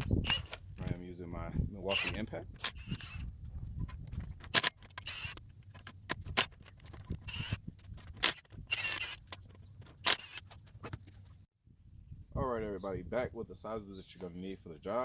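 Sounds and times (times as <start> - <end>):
impact wrench whirring: 0.0 - 0.6, 1.9 - 3.3, 4.5 - 9.4, 10.0 - 10.5.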